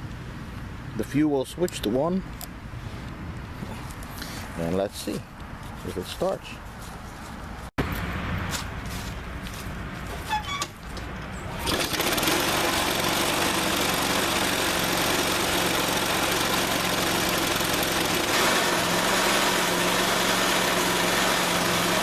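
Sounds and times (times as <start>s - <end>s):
lawn mower engine starting and running: 7.8s - 22.0s.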